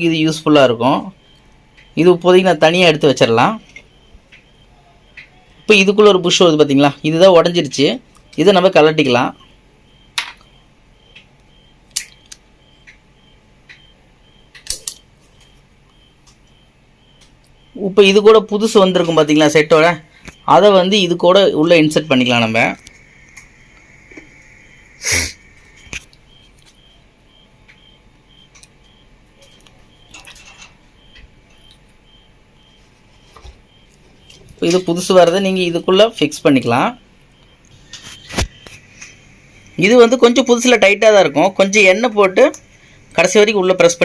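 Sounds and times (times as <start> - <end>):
sharp clicks of fan parts: 14.5 - 15.5.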